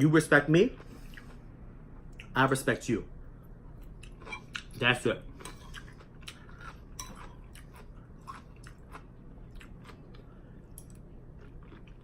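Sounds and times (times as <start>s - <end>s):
chewing soup: 3.8s - 12.0s.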